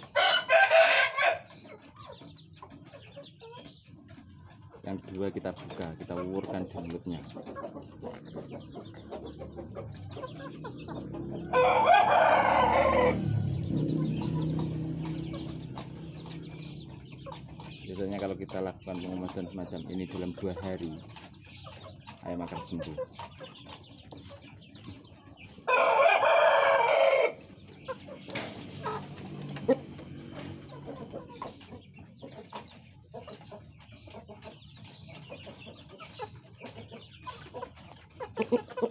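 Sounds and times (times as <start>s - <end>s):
chicken clucking: 0.0s - 38.9s
rooster crowing: 0.2s - 1.5s, 11.4s - 13.7s, 25.7s - 27.4s.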